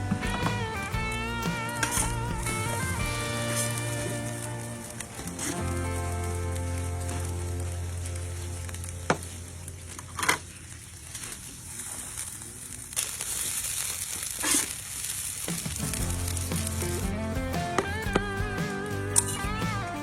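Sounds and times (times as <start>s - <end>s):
background music: 0.0s - 9.0s, 15.9s - 20.0s
rice sizzling in a pan: 1.6s - 18.0s.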